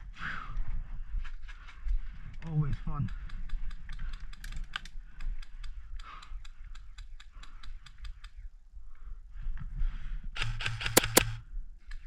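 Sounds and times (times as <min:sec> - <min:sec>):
airsoft guns firing: 0:10.4 - 0:11.4.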